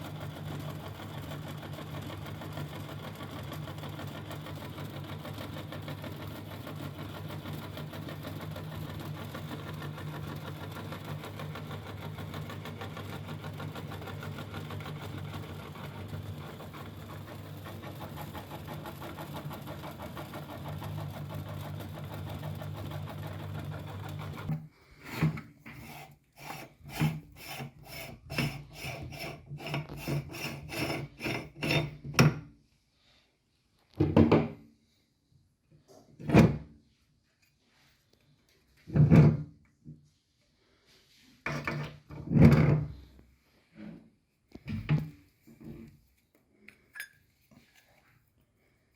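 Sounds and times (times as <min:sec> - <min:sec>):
electric meat grinder grinding: 0:00.0 - 0:24.6
irregular knocks and scrapes: 0:24.5 - 0:32.4.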